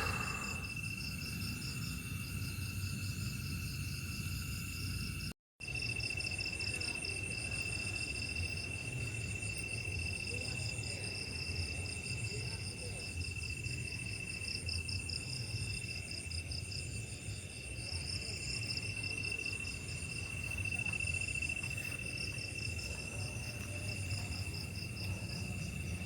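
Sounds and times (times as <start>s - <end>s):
insect pulsing chirp: 0.0s - 5.3s
crickets trilling: 0.0s - 26.0s.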